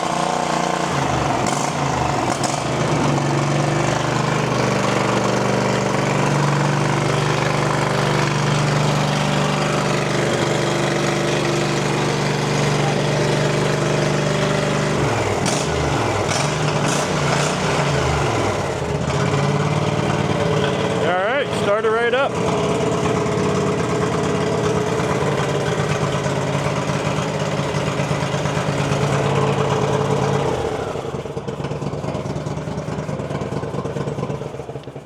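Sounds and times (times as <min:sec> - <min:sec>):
lawn tractor engine running: 0:00.0 - 0:35.0.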